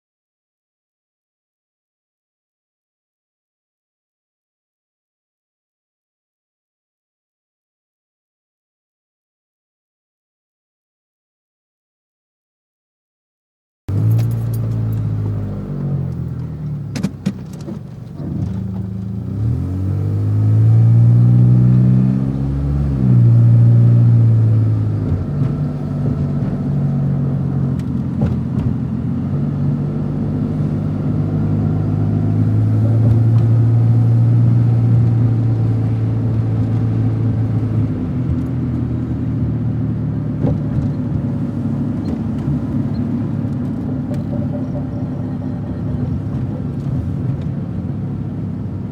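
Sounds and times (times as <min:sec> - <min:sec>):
car engine revving: 0:13.9 - 0:48.9.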